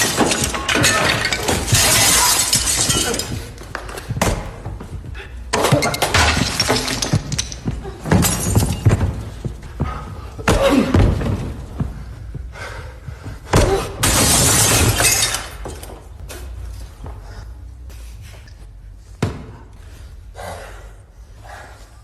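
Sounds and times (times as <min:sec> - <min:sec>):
glass shattering: 0:00.0 - 0:03.5, 0:05.5 - 0:09.0, 0:14.0 - 0:15.9.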